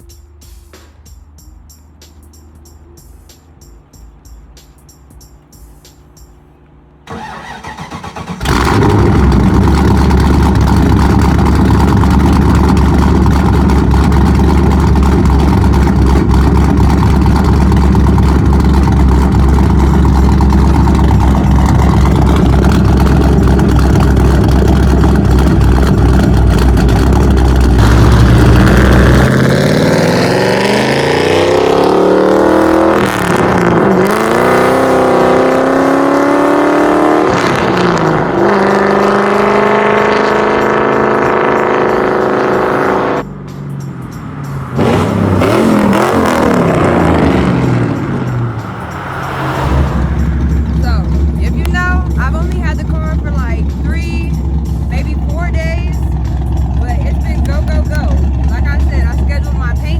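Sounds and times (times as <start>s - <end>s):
car engine starting and idling loudly: 0.0s - 59.9s
car revving and pulling away: 6.7s - 59.9s.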